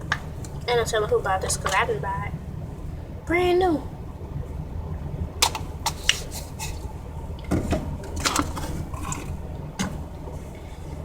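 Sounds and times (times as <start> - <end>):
steady low hum: 0.0 - 11.0
containers knocking and clattering: 5.4 - 6.8.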